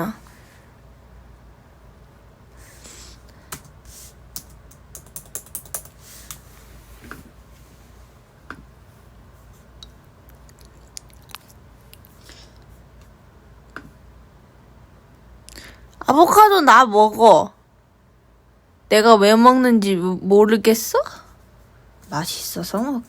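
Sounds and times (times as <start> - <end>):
computer keyboard typing: 4.4 - 6.4.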